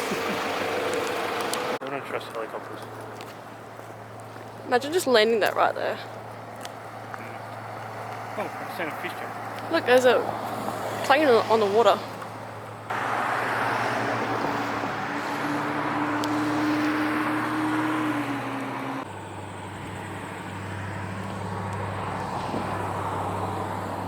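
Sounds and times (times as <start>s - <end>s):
propeller engine running: 0.0s - 3.2s.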